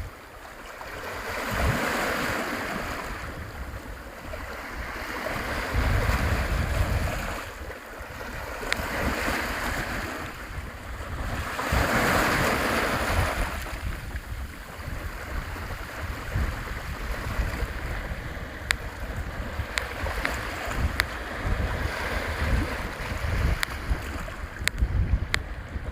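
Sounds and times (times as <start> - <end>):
sea waves washing in: 0.0 - 25.9
wind buffeting microphone: 0.0 - 25.9
faint sharp ticks: 18.6 - 18.9, 19.7 - 21.1, 24.6 - 25.6.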